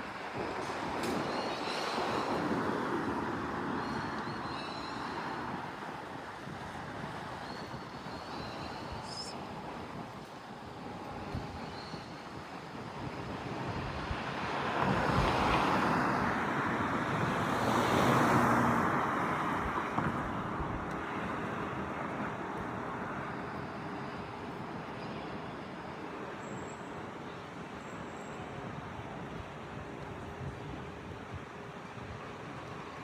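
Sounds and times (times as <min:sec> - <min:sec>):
road traffic rushing: 0:14.2 - 0:23.3.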